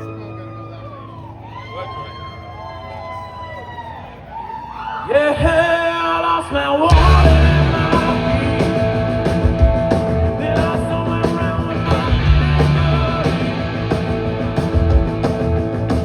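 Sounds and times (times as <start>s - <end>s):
rock band playing live: 6.9s - 16.0s.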